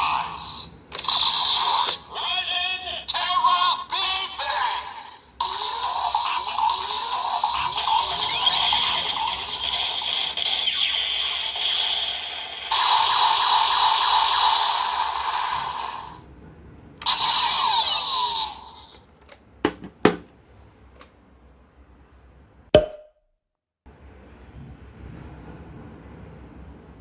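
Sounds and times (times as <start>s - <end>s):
toy electronic sound effects: 0.0s - 16.2s, 17.0s - 19.0s.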